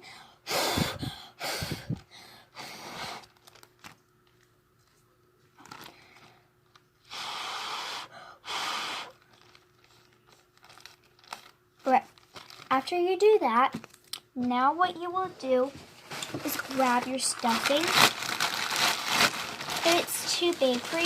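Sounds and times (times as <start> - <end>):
person blowing puffs of breath: 0.0 - 3.3, 7.1 - 9.2.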